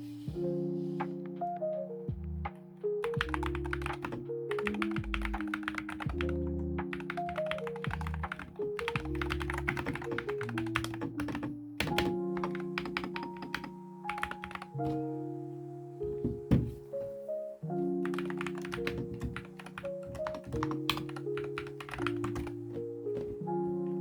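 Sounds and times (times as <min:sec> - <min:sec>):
background music: 0:00.0 - 0:24.0
fast typing on keyboard: 0:03.0 - 0:14.8, 0:18.0 - 0:22.6.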